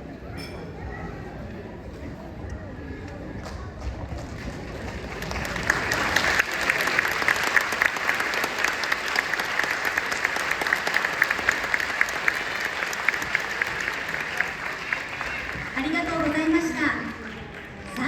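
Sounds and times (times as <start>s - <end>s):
audience applauding: 4.1s - 18.0s.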